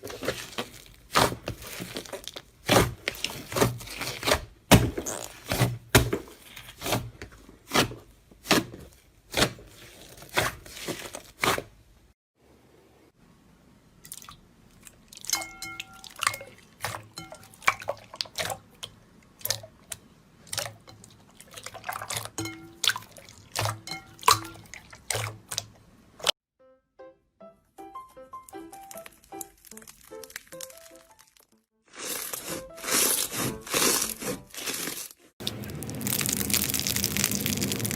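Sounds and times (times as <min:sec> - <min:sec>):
slime squeezed with wet pops: 0:21.5 - 0:26.3, 0:28.5 - 0:37.9.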